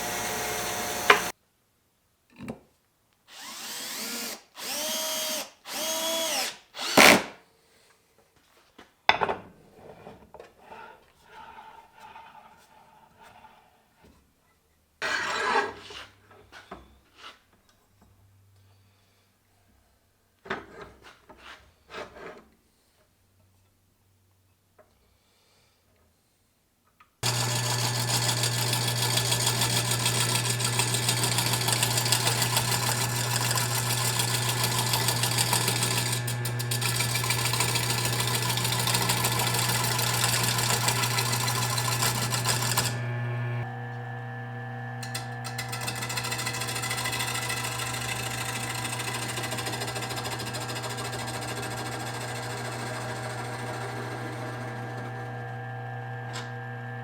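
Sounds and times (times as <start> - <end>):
loud cutting noise: 0.0 - 1.3, 3.4 - 7.3, 27.2 - 57.0
power tool motor humming: 0.0 - 1.3, 3.3 - 7.3, 27.2 - 57.0.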